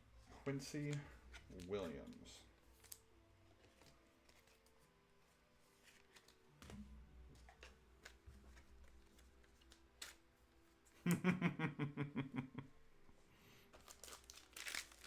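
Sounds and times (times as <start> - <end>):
faint background music: 0.0 - 11.7, 12.6 - 15.0
trading cards clicking and rustling: 7.4 - 10.2.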